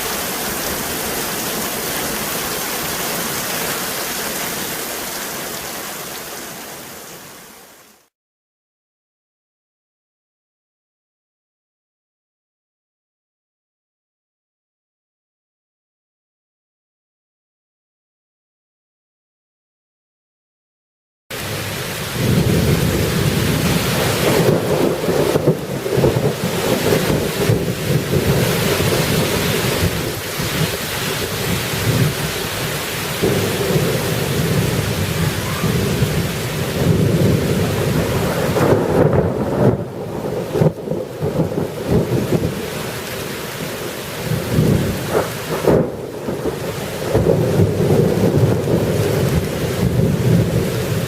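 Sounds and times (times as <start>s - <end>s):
rain falling: 0.0s - 8.1s, 21.3s - 51.0s.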